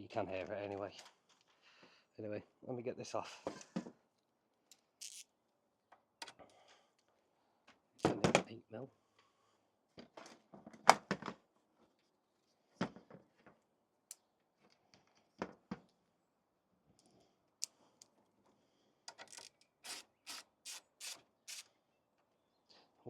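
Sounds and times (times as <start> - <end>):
ratchet rasping strokes: 5.0 - 5.2, 19.4 - 21.7.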